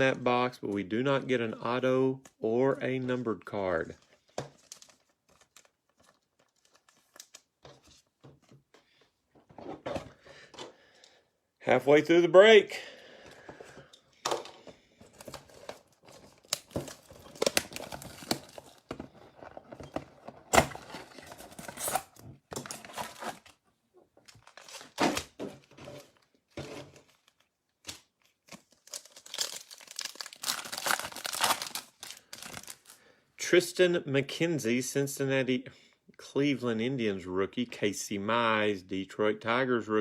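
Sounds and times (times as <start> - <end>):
packaging torn and crinkled: 4.6 - 7.5, 15.2 - 18.9, 24.3 - 25.3, 27.0 - 33.0.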